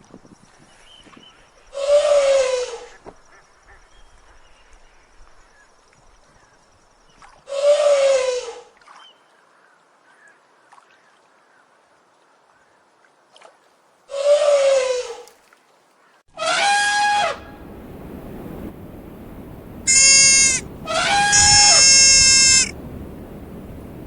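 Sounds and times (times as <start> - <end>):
elephant trumpeting: 16.4 - 17.6, 19.9 - 22.8.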